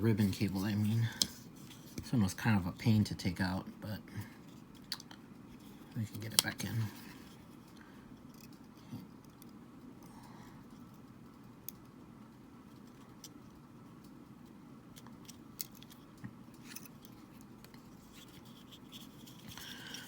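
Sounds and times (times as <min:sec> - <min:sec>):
small clicks and taps of parts: 0:01.1 - 0:02.1, 0:04.5 - 0:05.2, 0:06.1 - 0:06.8, 0:07.7 - 0:10.1, 0:11.6 - 0:12.0, 0:14.9 - 0:20.0.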